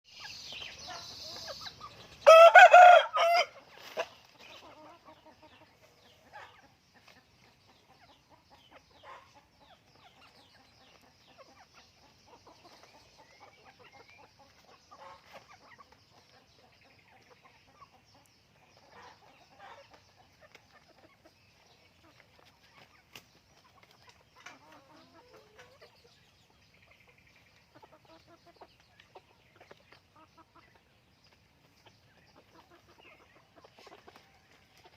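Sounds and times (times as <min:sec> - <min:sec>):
chickens clucking softly: 0:00.1 - 0:34.9
rooster crowing: 0:02.2 - 0:03.6.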